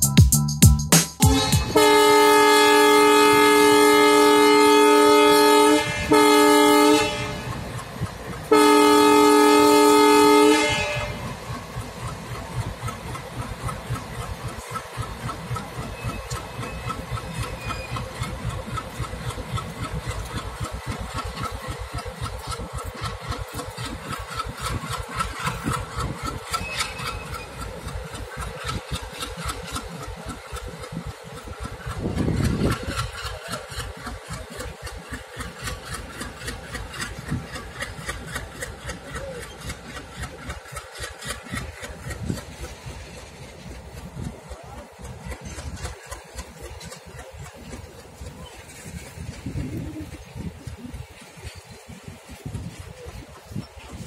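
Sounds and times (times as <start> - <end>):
train wheels clacking on rails: 0.9 - 54.0
train horn blasts: 1.2 - 7.8, 8.4 - 11.5.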